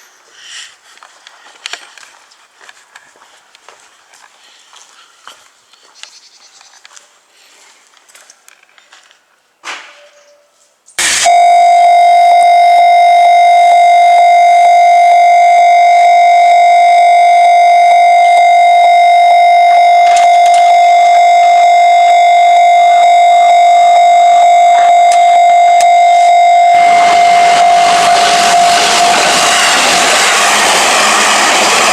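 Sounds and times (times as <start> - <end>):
level crossing warning bell: 11.2 - 31.9.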